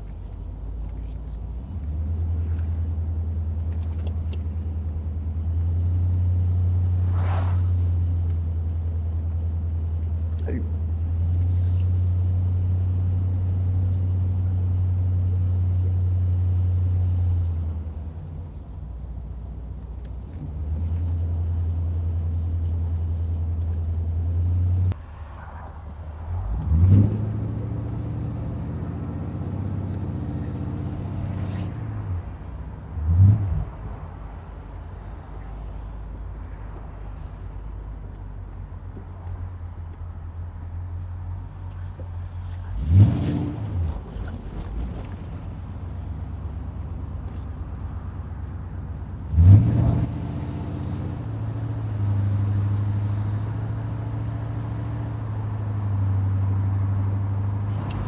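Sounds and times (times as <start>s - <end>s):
car engine running: 0.0s - 7.2s, 43.8s - 49.4s
road noise: 0.0s - 58.0s
engine revving: 24.5s - 32.4s, 33.0s - 34.3s, 42.6s - 45.2s, 49.2s - 58.0s.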